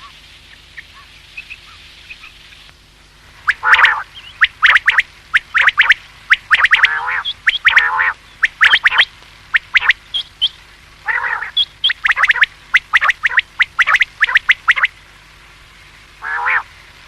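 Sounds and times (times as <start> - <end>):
quail whistled calls: 0.0 - 2.4, 3.4 - 14.9, 16.2 - 16.7
quail buzzy calls: 0.0 - 2.7, 3.4 - 15.0, 16.2 - 16.8.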